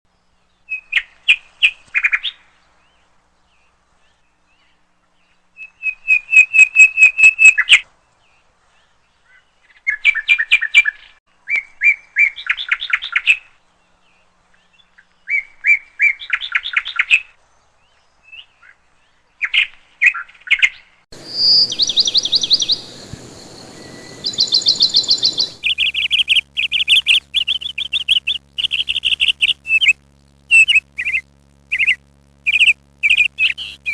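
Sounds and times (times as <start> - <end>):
songbird singing trills: 0.2 - 33.9
faint hiss: 21.2 - 26.3.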